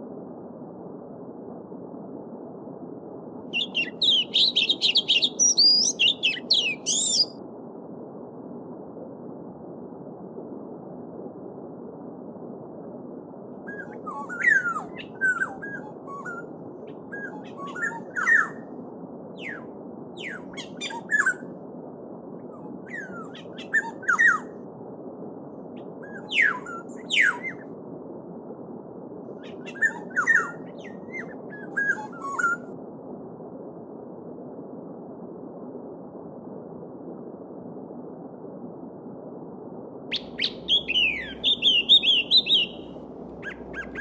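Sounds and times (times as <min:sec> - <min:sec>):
songbirds whistling: 0:03.5 - 0:07.4, 0:13.7 - 0:18.6, 0:19.4 - 0:21.5, 0:22.8 - 0:24.5, 0:26.1 - 0:27.7, 0:29.4 - 0:32.7, 0:40.1 - 0:44.0.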